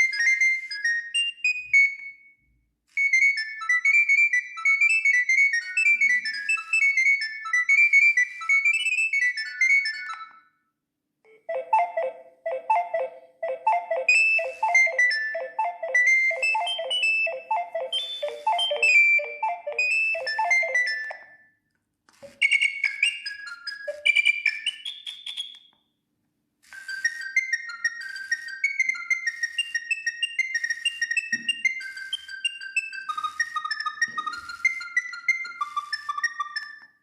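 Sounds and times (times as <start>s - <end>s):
mobile phone ringtones: 11.3s - 21.4s.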